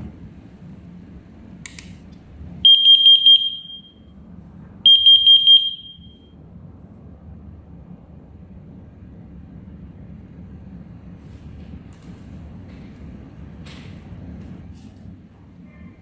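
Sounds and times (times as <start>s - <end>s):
click: 1.0s - 2.0s
high-pitched alarm beeps: 2.7s - 4.0s, 4.9s - 6.2s.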